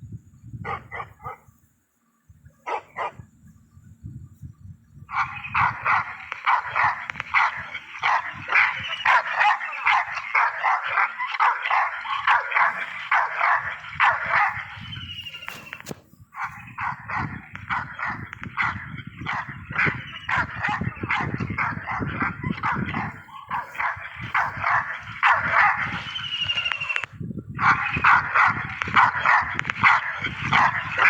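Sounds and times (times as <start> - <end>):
dog yapping: 5.1 - 15.8, 16.4 - 27.0, 27.6 - 31.0.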